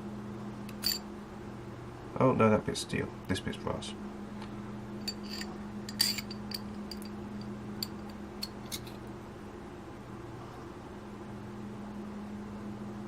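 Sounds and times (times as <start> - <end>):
low hum: 0.0 - 2.1, 3.9 - 9.4
small metal parts clinking: 0.8 - 1.0, 5.0 - 9.0.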